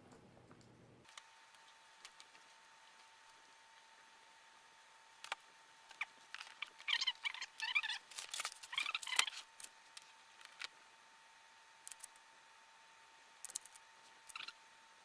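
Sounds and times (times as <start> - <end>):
small hardware clicking and scraping: 13.4 - 14.5.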